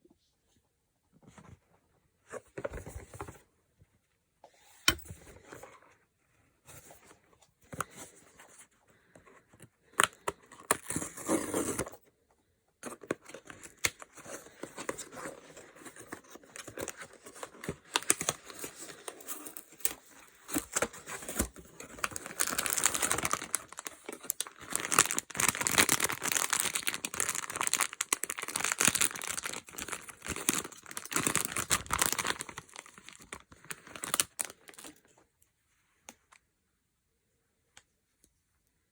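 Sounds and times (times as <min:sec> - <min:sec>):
packaging taps and rustles: 0:12.8 - 0:35.0
wrapper crinkling and tearing: 0:16.6 - 0:35.0.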